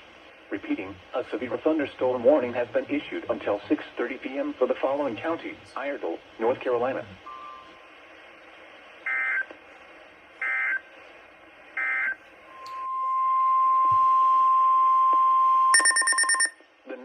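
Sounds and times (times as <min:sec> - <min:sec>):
faint radio hiss: 0:00.0 - 0:14.5, 0:16.6 - 0:17.0
steady warning alarm tone: 0:11.8 - 0:16.6
digital data tones: 0:15.7 - 0:16.6.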